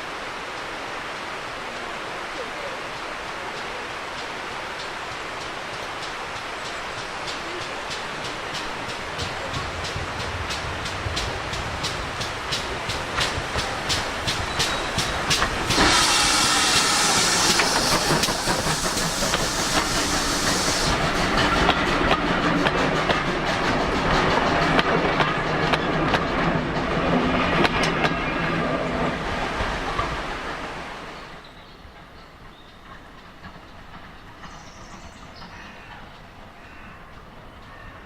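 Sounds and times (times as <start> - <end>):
loud steam hiss: 0.0 - 31.4
steam train passing: 0.0 - 38.0
wheels clicking over rail joints: 3.0 - 30.4.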